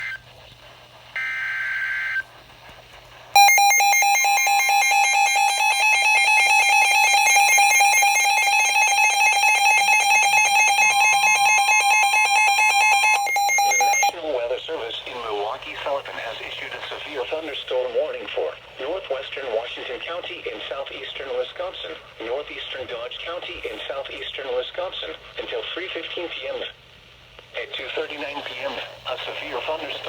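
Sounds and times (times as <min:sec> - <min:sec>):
pulsing alert alarm: 0:03.4 - 0:14.1
shrill data tones: 0:03.4 - 0:14.2.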